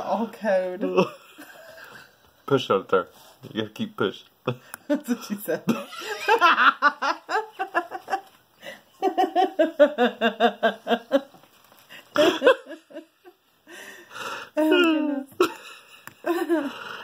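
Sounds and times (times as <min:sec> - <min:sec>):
people laughing hard: 0:05.7 - 0:08.4, 0:12.1 - 0:13.2.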